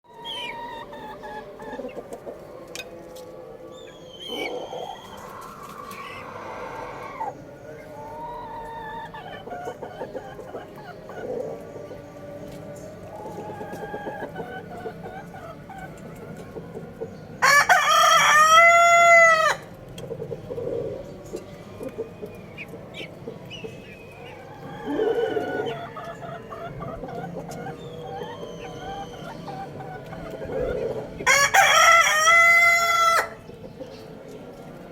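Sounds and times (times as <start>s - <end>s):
chickens clucking: 0.0s - 34.9s
rooster crowing: 17.4s - 19.7s, 24.4s - 33.4s
high chirping calls: 21.0s - 31.2s.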